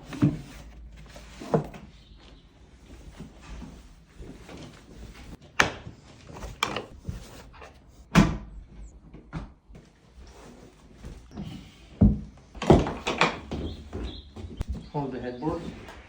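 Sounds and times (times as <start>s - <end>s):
bed frame parts knocking: 11.4s - 14.7s.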